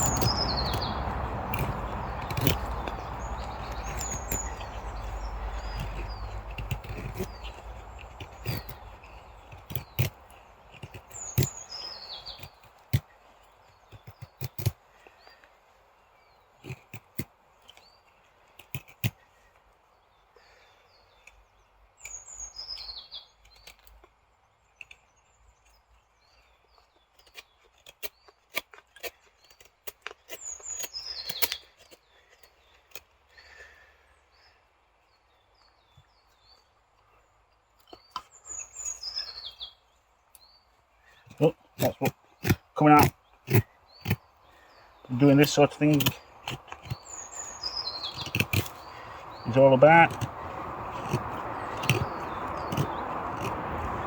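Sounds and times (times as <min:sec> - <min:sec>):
sharp clicks and cracks: 0:00.0 - 0:11.6, 0:41.3 - 0:44.2, 0:45.1 - 0:54.0
songbird singing: 0:00.0 - 0:54.0.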